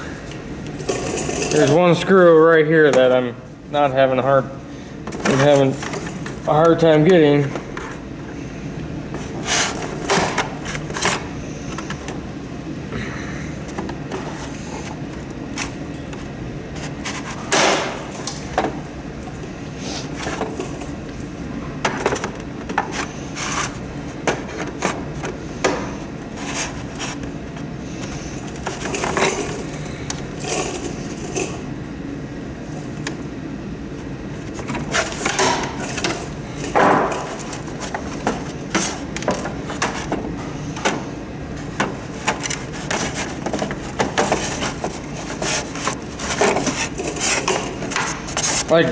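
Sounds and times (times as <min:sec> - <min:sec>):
hand tools knocking and scraping: 0:05.0 - 0:08.0, 0:16.0 - 0:18.8, 0:21.8 - 0:31.7, 0:34.4 - 0:48.9.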